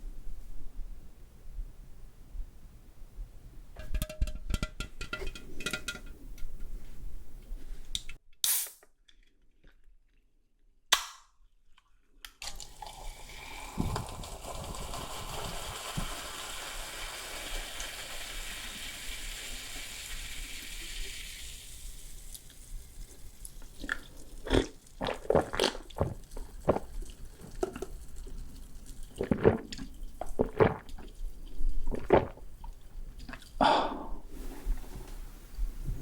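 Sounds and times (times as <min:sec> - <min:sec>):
crunchy food being chewed: 0:23.8 - 0:28.0, 0:29.0 - 0:33.6.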